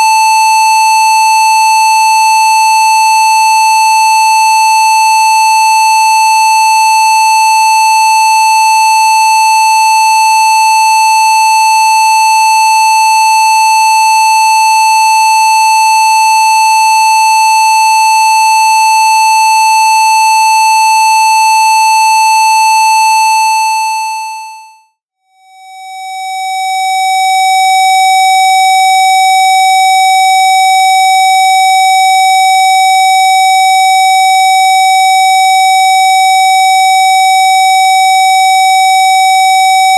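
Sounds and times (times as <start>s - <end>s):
steady electronic test tone: 0.0s - 2.4s, 19.3s - 27.5s.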